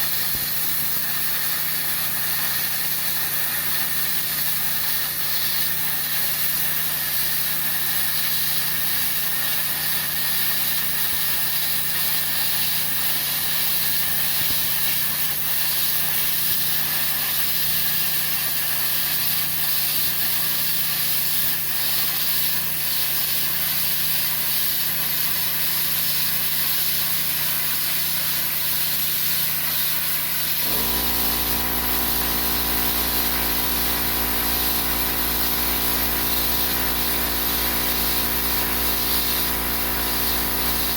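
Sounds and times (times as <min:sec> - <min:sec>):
plasma cutter hissing: 0:00.0 - 0:40.9
machine motor humming: 0:30.6 - 0:40.9.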